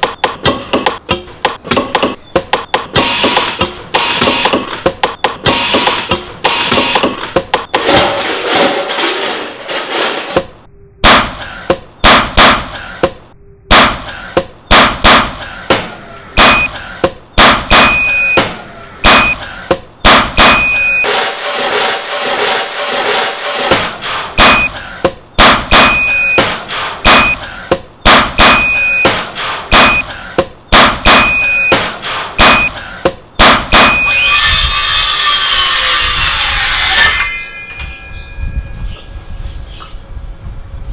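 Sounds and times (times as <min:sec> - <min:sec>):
sharp bangs and clanks: 0:00.0 - 0:38.8
short high beeps: 0:17.8 - 0:18.5, 0:20.6 - 0:21.1, 0:25.8 - 0:26.5, 0:28.5 - 0:29.2, 0:31.2 - 0:31.8.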